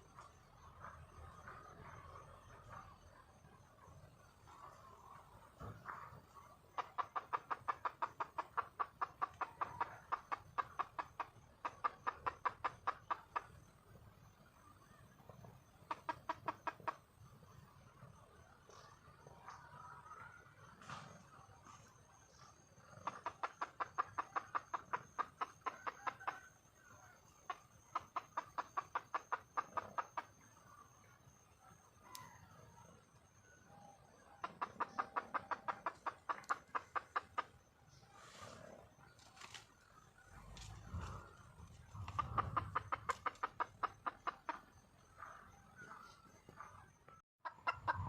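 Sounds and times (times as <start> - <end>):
hen clucking: 4.5 - 13.6, 14.8 - 17.1, 21.9 - 31.4, 34.2 - 48.0.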